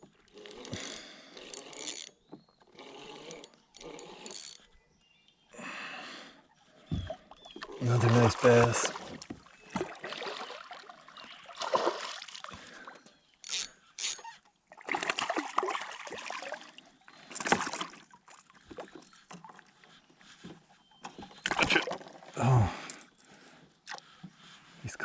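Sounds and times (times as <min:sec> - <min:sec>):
water splashing and sloshing: 0:06.8 - 0:13.4, 0:14.3 - 0:23.2.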